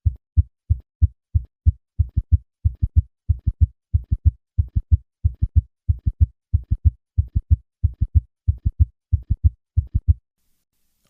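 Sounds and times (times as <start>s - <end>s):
heartbeat thuds: 0.0s - 10.2s.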